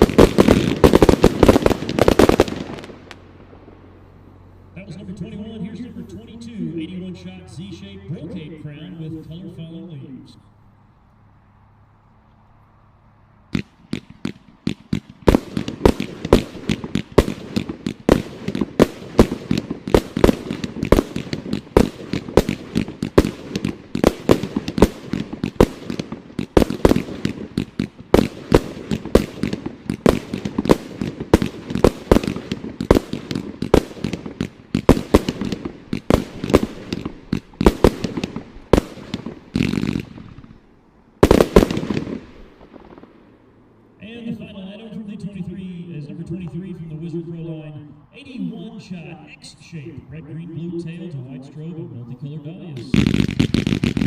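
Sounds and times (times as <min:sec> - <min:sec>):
fireworks launch thumps and bursts: 0:00.0 - 0:03.2, 0:13.5 - 0:40.6, 0:52.9 - 0:54.0
heavy firework bursts: 0:00.0 - 0:06.6, 0:13.5 - 0:43.6, 0:52.8 - 0:54.0.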